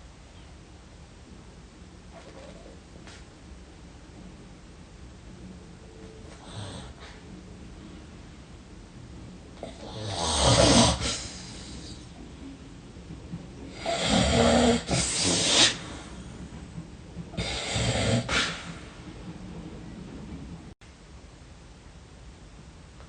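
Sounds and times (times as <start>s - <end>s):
person snoring heavily: 6.4s - 7.1s, 9.6s - 12.0s, 13.7s - 16.0s, 17.4s - 18.7s.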